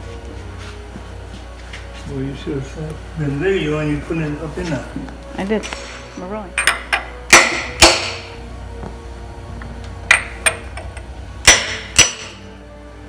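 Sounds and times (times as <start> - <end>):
hammer blows on metal: 6.6 - 8.4, 10.1 - 12.5.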